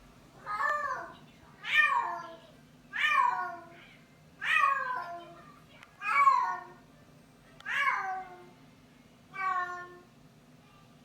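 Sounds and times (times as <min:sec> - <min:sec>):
cat yowling: 0:03.0 - 0:03.7, 0:04.4 - 0:05.2, 0:07.7 - 0:08.4, 0:09.4 - 0:10.0.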